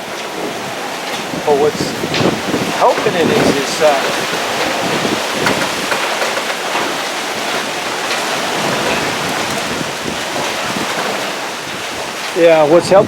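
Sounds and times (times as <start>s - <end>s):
wind buffeting microphone: 0.0s - 13.0s
wind rushing through trees: 0.0s - 13.0s.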